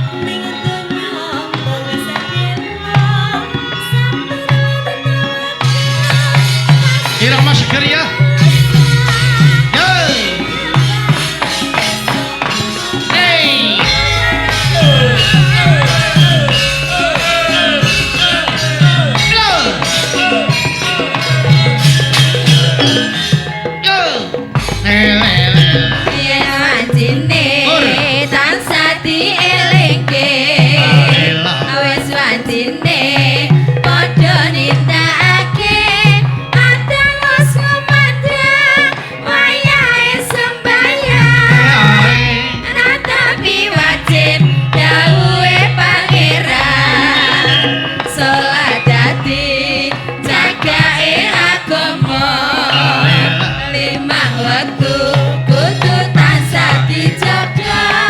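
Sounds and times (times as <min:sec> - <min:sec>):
gamelan music: 0:00.0 - 0:58.0
hand drumming: 0:05.6 - 0:58.0.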